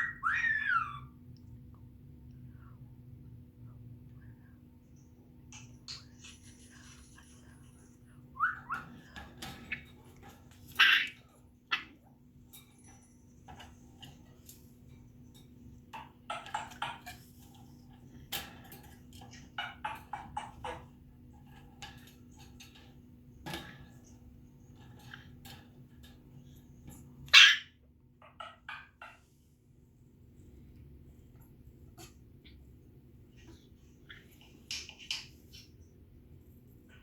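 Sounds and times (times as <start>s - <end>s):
parrot calling and squawking: 0.0s - 1.2s, 10.6s - 12.0s, 27.3s - 27.8s.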